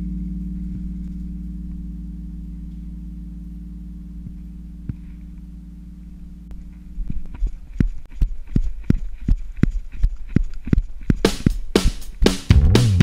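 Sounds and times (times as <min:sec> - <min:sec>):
guitar and bass chord: 0:00.0 - 0:07.0, 0:12.5 - 0:13.0.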